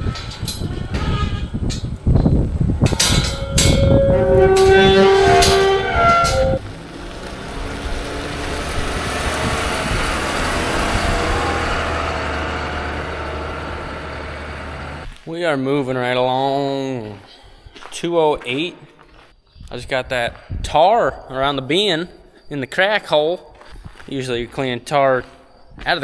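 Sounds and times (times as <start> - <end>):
clattering knocks: 0.0 - 14.6
metallic squeal: 0.0 - 15.0
steady machine hum: 0.0 - 15.0.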